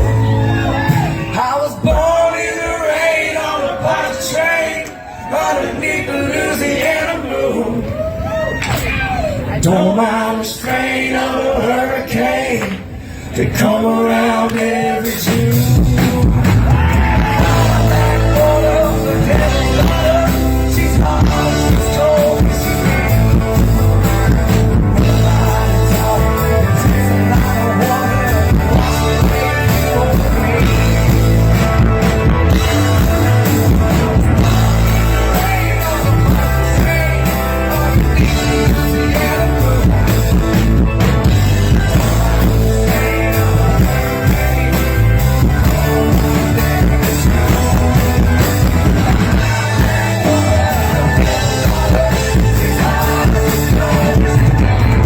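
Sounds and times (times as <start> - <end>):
live rock band playing: 0.0 - 2.2, 14.7 - 55.0.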